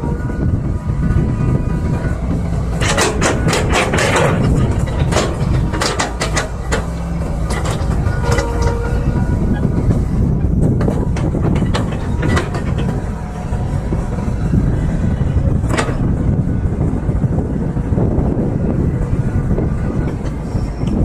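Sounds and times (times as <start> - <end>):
excavator engine rumble: 0.0 - 21.0
metallic clanks and knocks: 1.7 - 14.4, 15.5 - 16.2.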